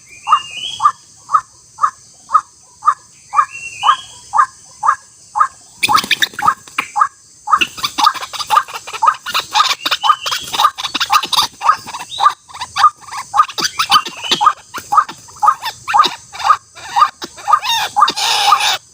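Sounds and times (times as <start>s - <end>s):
waterhen calling harsh croaks: 0.3s - 18.9s.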